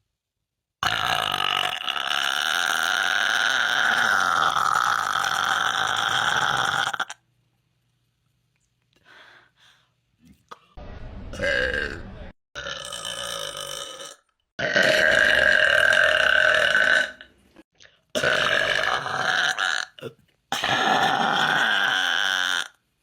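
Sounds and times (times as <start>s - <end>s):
person burping: 0.8s - 7.2s, 11.4s - 12.0s, 12.6s - 17.4s, 18.2s - 22.8s.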